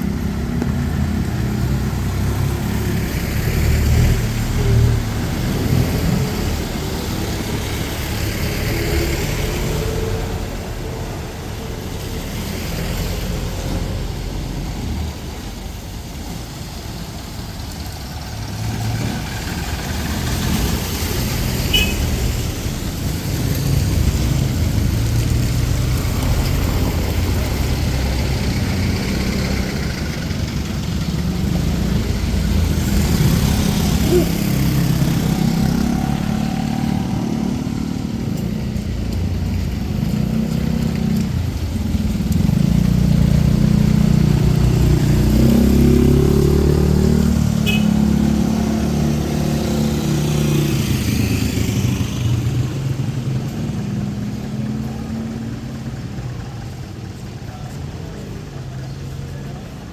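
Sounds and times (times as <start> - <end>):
vehicle engines idling: 0.0 - 59.9.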